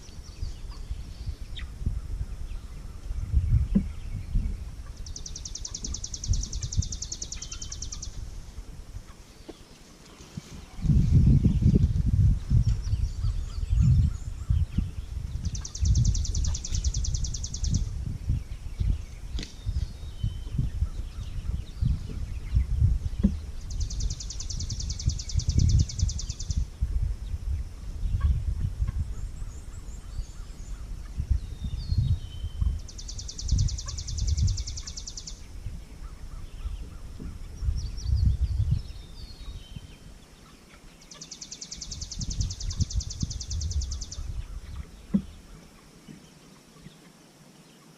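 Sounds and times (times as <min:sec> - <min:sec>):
wind rumble on microphone: 0:00.0 - 0:47.0
chicks peeping: 0:33.5 - 0:35.1.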